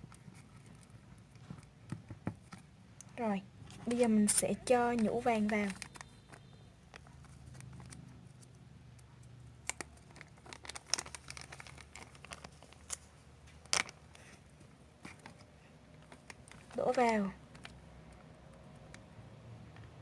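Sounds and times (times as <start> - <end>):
plastic packet crinkling and tearing: 3.9 - 8.5, 9.6 - 19.0
sharp clicks and crackles: 3.9 - 14.3, 15.0 - 19.1.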